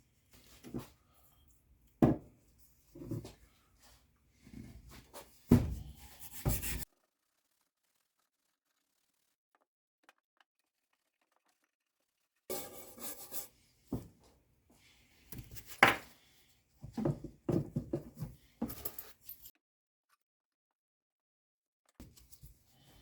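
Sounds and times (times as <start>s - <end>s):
handling noise rubbing and clinks: 17.0s - 19.5s.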